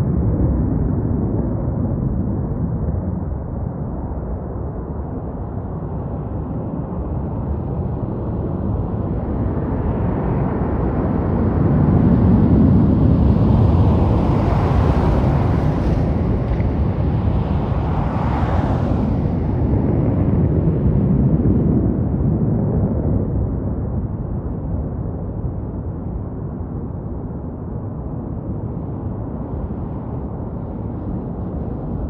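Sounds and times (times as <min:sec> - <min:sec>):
fighter jet engine roar: 0:00.0 - 0:32.0.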